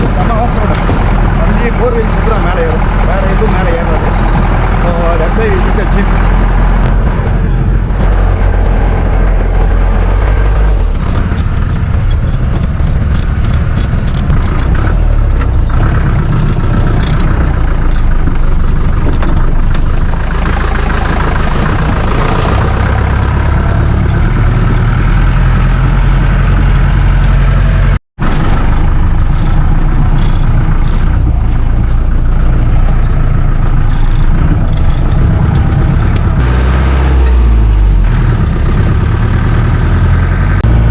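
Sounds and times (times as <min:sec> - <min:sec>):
knocks from bumpy ride: 0:00.0 - 0:24.8
jeep engine running: 0:00.0 - 0:40.9.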